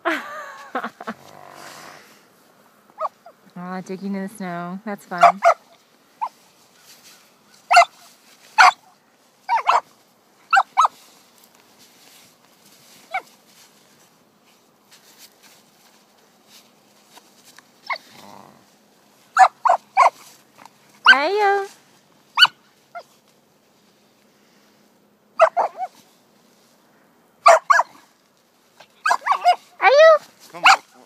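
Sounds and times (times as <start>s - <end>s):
puppy yapping: 3.0s - 3.4s, 5.2s - 6.4s, 7.7s - 8.9s, 9.5s - 9.9s, 10.5s - 11.0s, 17.8s - 18.2s, 19.4s - 20.2s, 22.3s - 23.1s, 25.4s - 26.0s, 27.4s - 28.0s, 29.0s - 31.0s.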